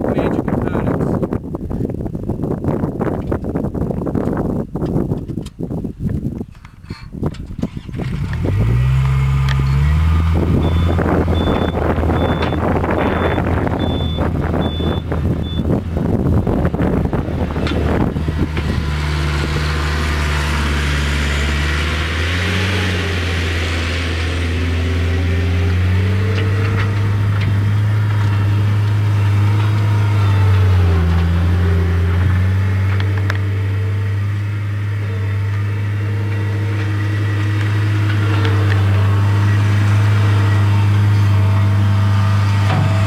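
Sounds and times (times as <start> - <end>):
diesel engine running: 7.2 - 43.0.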